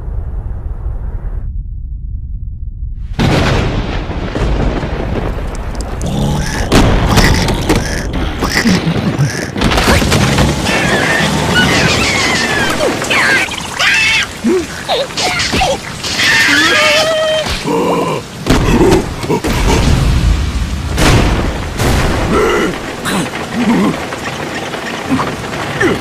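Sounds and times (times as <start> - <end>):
booming thunder: 2.1 - 14.9, 18.3 - 26.0
rain hiss: 4.3 - 26.0
squeaky cartoon character voices: 10.7 - 17.5.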